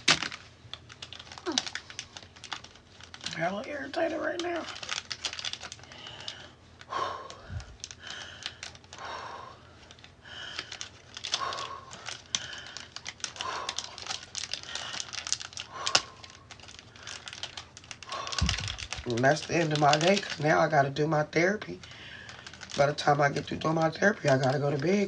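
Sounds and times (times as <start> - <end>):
person breathing heavily in pain: 5.7 - 19.1, 21.8 - 22.7
rustling: 9.7 - 20.5.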